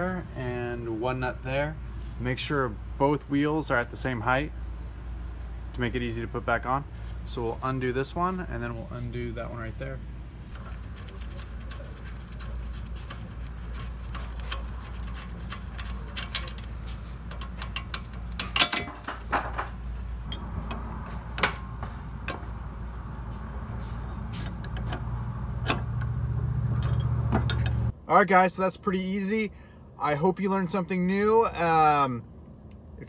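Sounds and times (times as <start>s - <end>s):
steady low hum: 0.0s - 33.0s
metal tools clinking: 14.1s - 21.6s, 26.7s - 27.9s.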